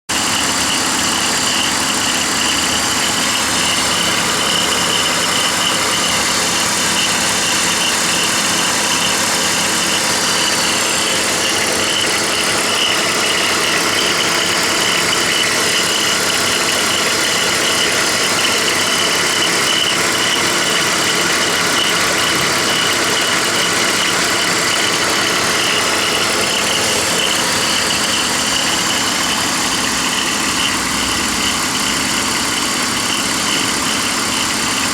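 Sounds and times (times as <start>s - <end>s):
car engine idling: 0.1s - 34.9s
high-pitched pulley whine: 0.1s - 34.9s.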